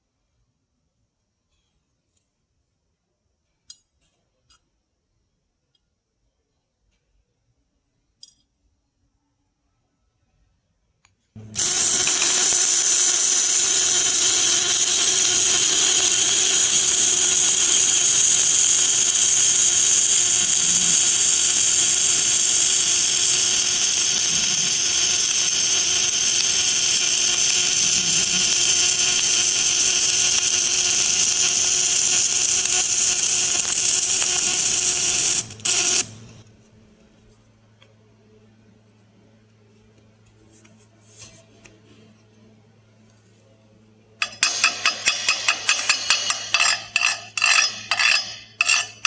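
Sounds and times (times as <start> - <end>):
welding arc crackling and sizzling: 11.4 - 36.6, 44.2 - 49.0.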